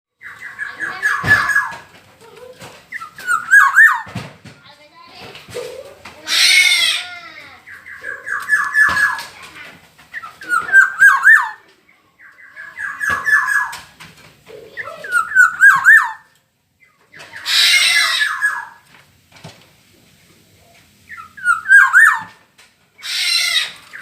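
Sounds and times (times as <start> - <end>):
bird whistling fluty notes: 2.9 - 4.1, 10.4 - 11.6, 21.1 - 22.3
harsh squawking call: 3.2 - 4.1, 6.2 - 9.3, 10.4 - 11.6, 14.8 - 16.3, 17.4 - 18.8, 21.1 - 22.4, 23.0 - 24.0.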